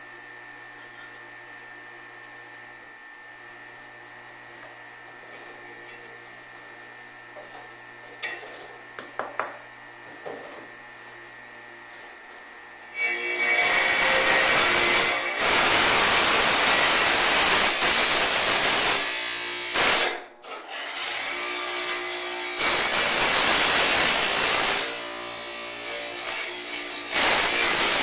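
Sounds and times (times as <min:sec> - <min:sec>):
tile saw cutting brick: 0:12.9 - 0:28.0.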